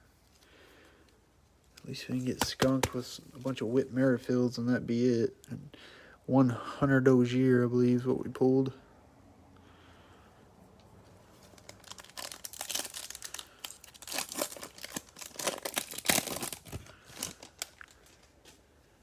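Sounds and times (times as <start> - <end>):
foil wrapper torn and crinkled: 11.4 - 18.3.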